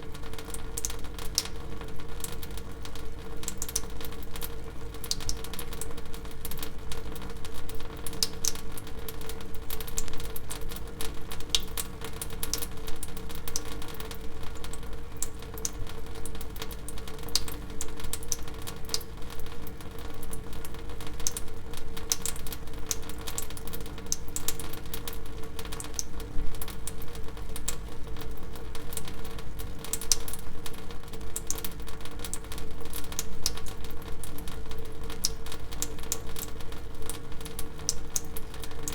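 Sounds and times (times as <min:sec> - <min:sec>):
water dripping: 0:03.4 - 0:06.7, 0:13.3 - 0:29.1, 0:31.4 - 0:38.9.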